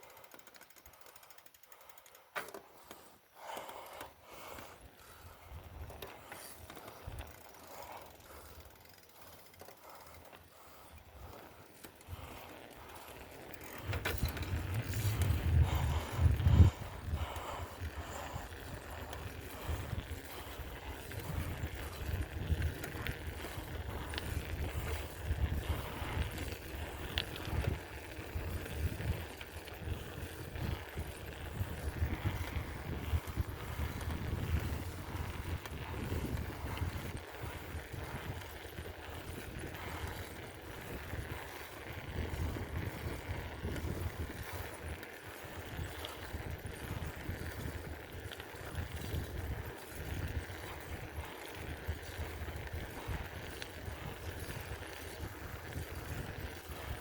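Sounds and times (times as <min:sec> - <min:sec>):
wind buffeting microphone: 0:13.6 - 0:57.0.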